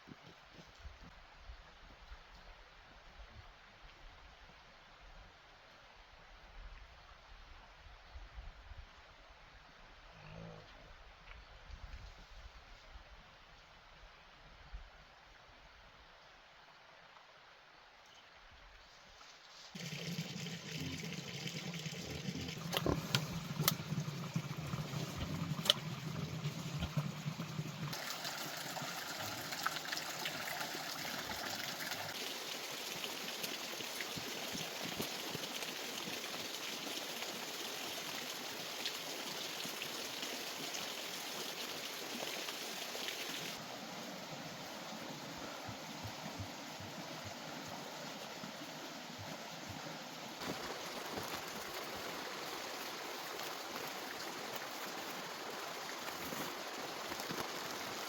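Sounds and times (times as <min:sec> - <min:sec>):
water rushing: 0:19.8 - 0:58.0.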